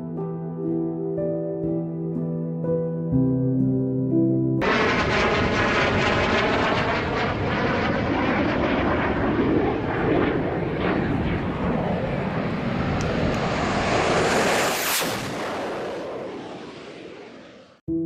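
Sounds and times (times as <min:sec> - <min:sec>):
aircraft engine roar: 0:04.6 - 0:17.8.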